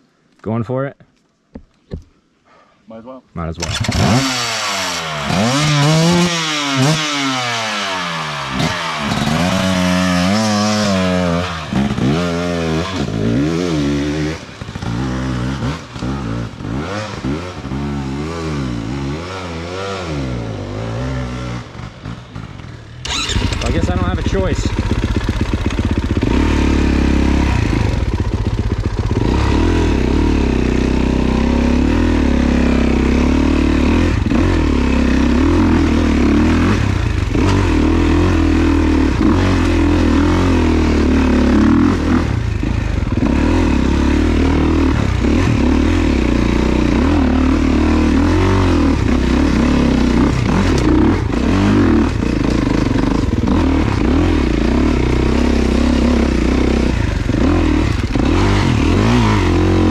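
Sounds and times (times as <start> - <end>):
dirt bike engine revving: 3.6 - 59.9.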